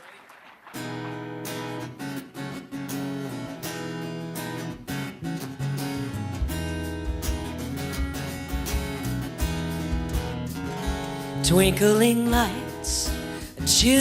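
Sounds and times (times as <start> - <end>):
strummed acoustic guitar chords: 0.8 - 14.0
bass notes: 4.7 - 14.0.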